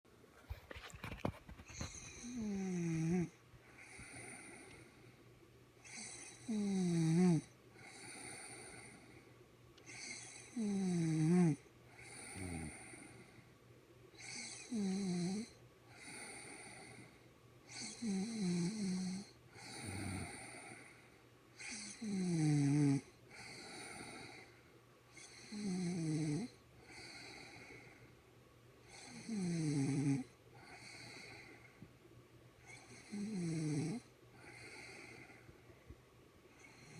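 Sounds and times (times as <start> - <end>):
quiet breathing: 0.3 - 6.8, 7.4 - 22.2, 23.0 - 25.7, 26.4 - 29.4, 30.0 - 32.0, 32.6 - 36.9
woman snoring loudly: 1.8 - 4.6, 5.9 - 8.9, 9.9 - 13.0, 14.2 - 16.8, 17.7 - 20.8, 21.6 - 24.3, 25.4 - 27.1, 28.9 - 31.2, 33.0 - 35.1.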